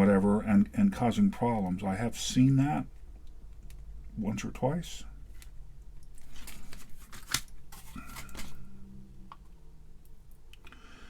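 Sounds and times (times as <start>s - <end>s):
low steady hum: 0.0s - 11.0s
rustling and scraping: 6.2s - 8.7s.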